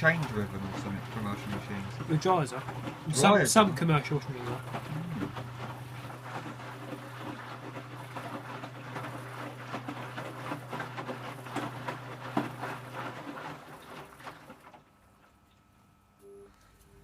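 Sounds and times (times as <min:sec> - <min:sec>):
water and laundry sloshing: 0:00.0 - 0:15.9
washing machine motor hum: 0:00.0 - 0:17.0.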